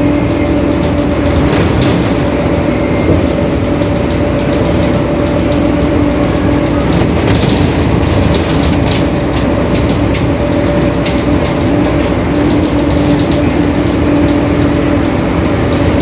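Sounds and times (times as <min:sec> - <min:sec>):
bus body rattling: 0:00.0 - 0:16.0
bus driveline and road rumble: 0:00.0 - 0:16.0
differential whine: 0:00.0 - 0:16.0.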